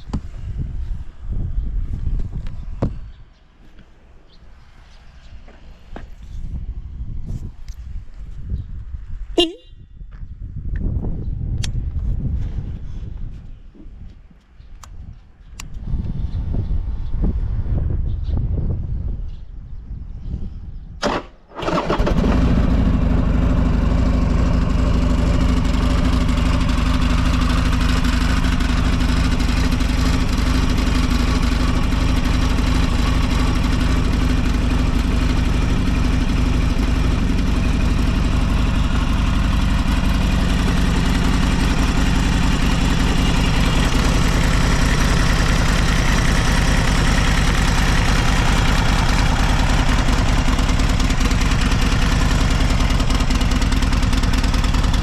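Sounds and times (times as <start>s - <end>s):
motorcycle engine idling: 21.7s - 55.0s.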